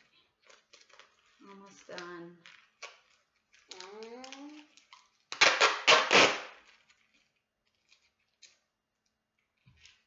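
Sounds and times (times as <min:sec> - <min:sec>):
duct tape ripping off roll: 0:02.8 - 0:07.0.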